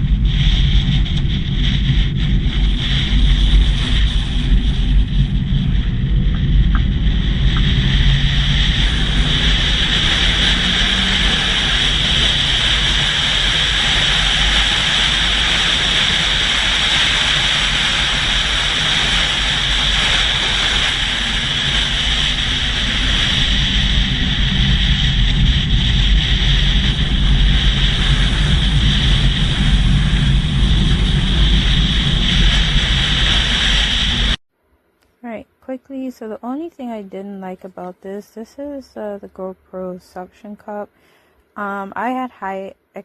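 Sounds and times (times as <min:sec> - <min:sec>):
aircraft cabin drone: 0:00.0 - 0:34.4
hiss of rushing air: 0:00.0 - 0:34.4.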